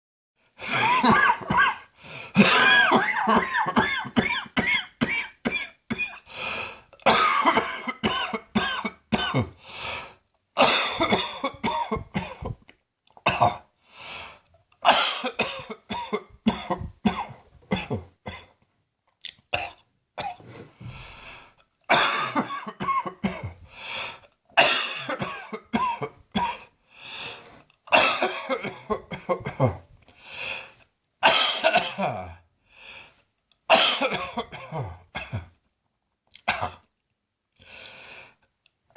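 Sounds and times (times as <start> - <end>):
person coughing: 0.6 - 6.2, 7.0 - 9.6, 10.6 - 12.6, 13.3 - 13.7, 14.8 - 18.6, 21.9 - 23.6, 24.6 - 26.7, 27.9 - 29.9, 31.2 - 32.4, 33.7 - 35.6, 36.4 - 36.8.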